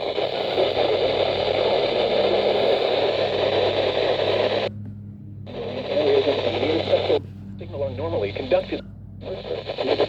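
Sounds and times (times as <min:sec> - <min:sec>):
radio static hiss: 0:00.0 - 0:04.7, 0:05.5 - 0:10.0
steady low hum: 0:00.0 - 0:10.0.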